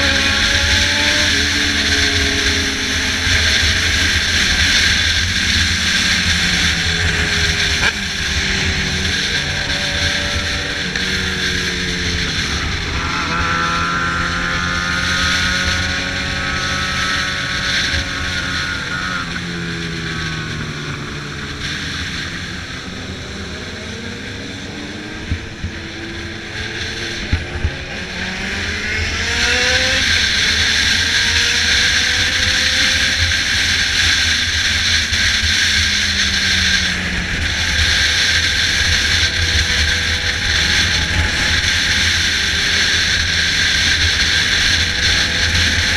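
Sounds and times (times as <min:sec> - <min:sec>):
motorcycle engine: 0:00.0 - 0:45.9.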